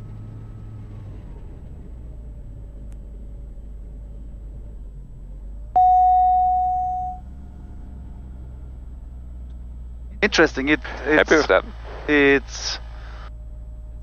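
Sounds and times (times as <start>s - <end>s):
cockpit alert tone: 5.8s - 7.2s
aircraft engine running: 10.2s - 13.3s.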